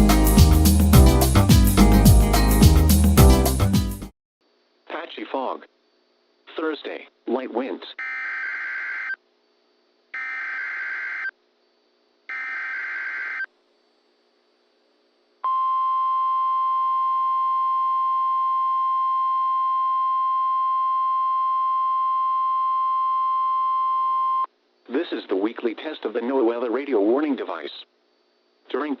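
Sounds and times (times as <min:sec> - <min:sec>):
buzzing data bursts: 0:08.0 - 0:09.2, 0:10.2 - 0:11.3, 0:12.3 - 0:13.5.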